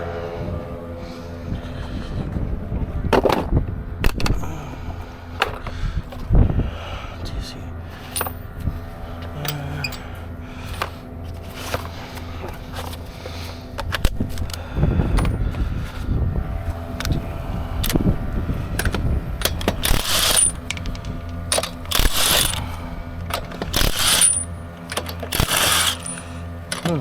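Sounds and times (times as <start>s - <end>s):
steady low hum: 0.0s - 27.0s
hand tools clinking and clattering: 8.0s - 16.0s, 17.8s - 27.0s.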